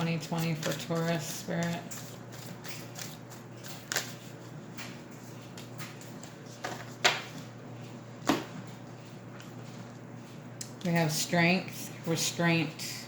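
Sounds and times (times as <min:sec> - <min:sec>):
cards being shuffled: 0:00.4 - 0:04.3
cards snapping: 0:02.6 - 0:04.1.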